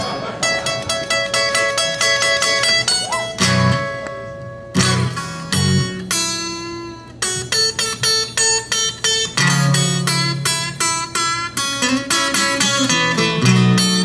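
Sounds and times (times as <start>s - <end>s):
acoustic guitar blues: 0.0s - 14.0s.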